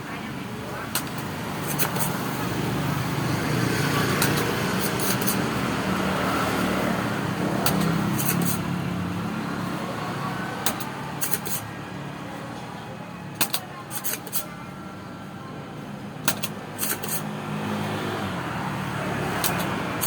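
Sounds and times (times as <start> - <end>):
passing vehicle engine rumble: 0.0 - 13.8, 14.4 - 20.0
sharp clicks: 7.6 - 8.6, 10.6 - 11.6, 16.3 - 17.2, 19.4 - 19.8.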